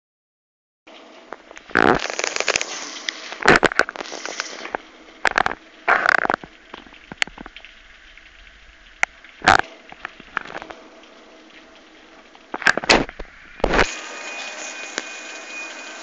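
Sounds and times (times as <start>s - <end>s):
raindrop clicks: 0.9s - 13.9s
heavy rain hissing: 1.7s - 6.7s, 12.0s - 16.0s.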